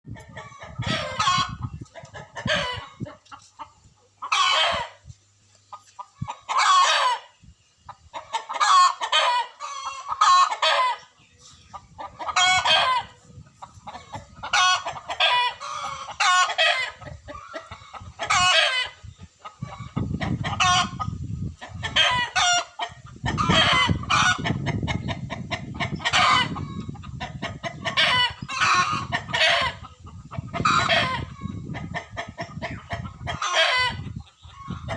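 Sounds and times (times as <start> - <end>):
chickens calling: 0.1 - 34.9
rooster calling: 4.3 - 5.0, 12.2 - 13.2, 14.5 - 17.0.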